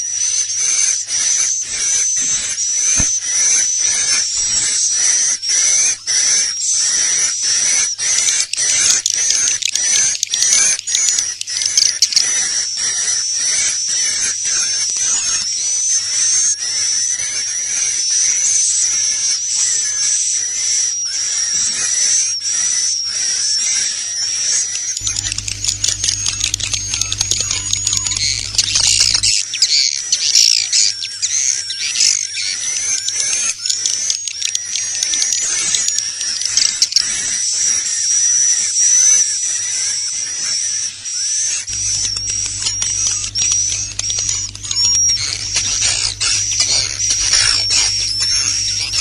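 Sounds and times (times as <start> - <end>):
low hum: 25.0 - 29.3, 41.7 - 49.0
rapid clicking chirps: 25.0 - 29.3, 41.7 - 49.0
thin whistling tone: 25.0 - 29.3, 41.7 - 49.0
high-pitched buzzing twitter: 25.0 - 29.4, 41.7 - 49.0.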